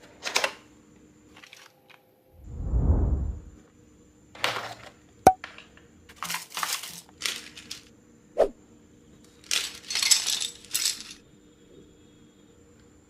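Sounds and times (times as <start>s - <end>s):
keyboard parts clattering: 9.4s - 11.2s.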